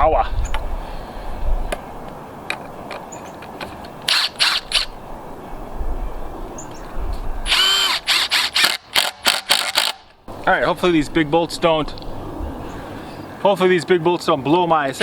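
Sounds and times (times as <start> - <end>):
impact driver bursts: 4.1 - 4.9, 7.5 - 10.1.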